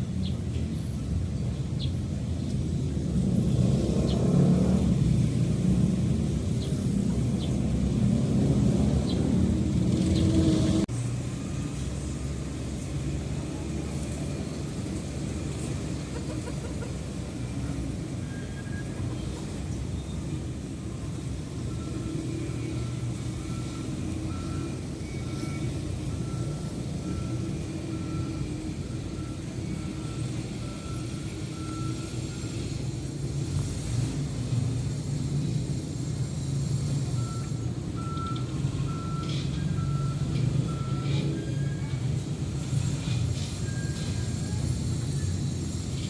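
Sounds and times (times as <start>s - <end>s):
low engine rumble: 0.0s - 46.0s
reversing alarm beeping: 18.1s - 19.1s, 21.6s - 32.7s, 37.1s - 42.9s, 43.5s - 45.6s.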